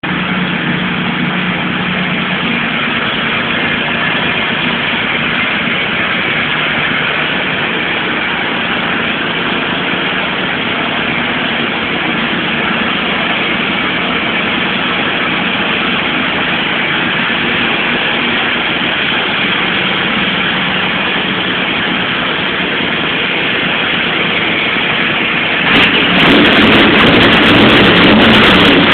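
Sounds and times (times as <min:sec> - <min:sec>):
car engine idling: 0:00.0 - 0:28.9.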